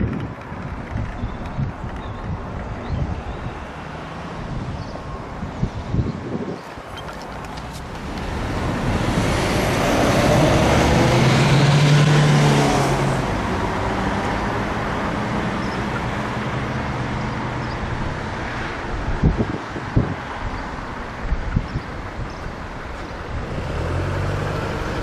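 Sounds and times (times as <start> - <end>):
vehicle passing: 5.7 - 19.5.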